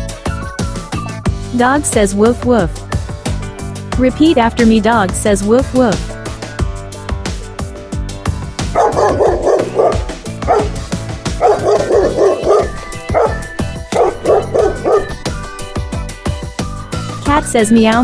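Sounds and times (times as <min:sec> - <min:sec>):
background music with steady beat: 0:00.0 - 0:18.0
dog barking: 0:08.8 - 0:10.7, 0:11.4 - 0:15.2.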